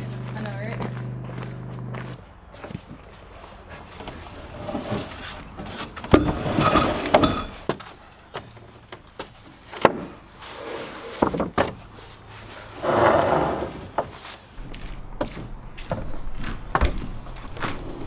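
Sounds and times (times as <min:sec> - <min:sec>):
panel scraping: 0:00.0 - 0:02.2, 0:14.6 - 0:18.0.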